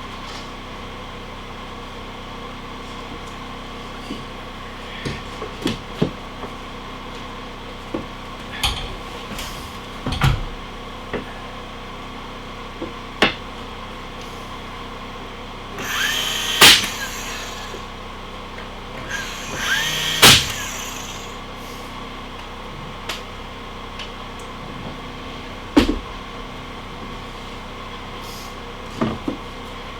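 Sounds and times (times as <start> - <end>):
power drill driving screws: 15.8 - 17.9, 19.0 - 21.4.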